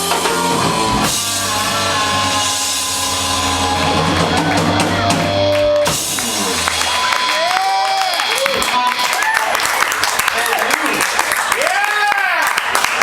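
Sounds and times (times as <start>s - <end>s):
sustained bass note: 0.0s - 7.2s
rock band holding a chord: 0.0s - 9.2s.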